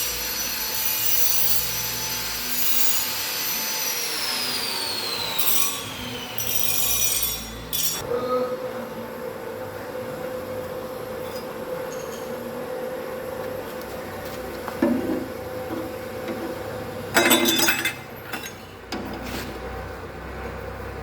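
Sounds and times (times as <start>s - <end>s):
workshop hum: 0.0s - 21.0s
metal tools clinking: 6.4s - 8.0s, 11.3s - 12.4s, 17.1s - 18.8s.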